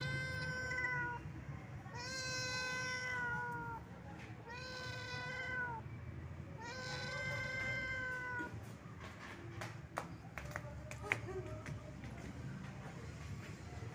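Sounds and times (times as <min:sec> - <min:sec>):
cat meowing: 0:00.0 - 0:01.3, 0:01.9 - 0:05.8, 0:06.6 - 0:08.6.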